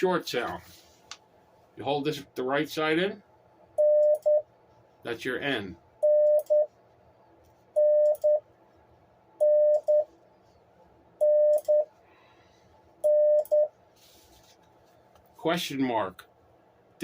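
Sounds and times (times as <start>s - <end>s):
morse code beeps: 3.8s - 4.4s, 6.0s - 6.7s, 7.8s - 8.4s, 9.4s - 10.1s, 11.2s - 11.9s, 13.0s - 13.7s.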